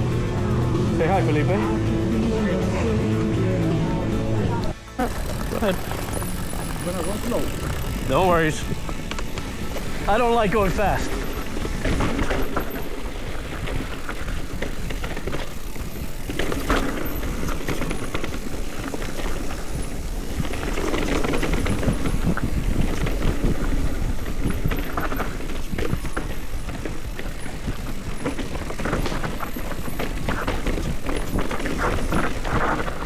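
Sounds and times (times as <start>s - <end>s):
bike rattling and knocking: 5.0s - 33.0s
tyres crunching over dirt and rocks: 5.0s - 33.0s
wind rumble on microphone: 19.4s - 29.3s.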